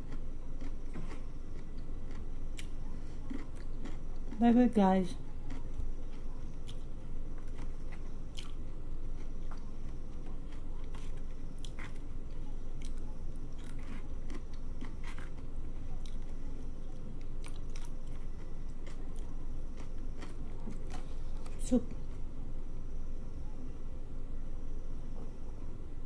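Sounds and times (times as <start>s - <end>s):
person chewing: 0.0s - 4.4s, 5.4s - 16.4s, 17.2s - 21.6s.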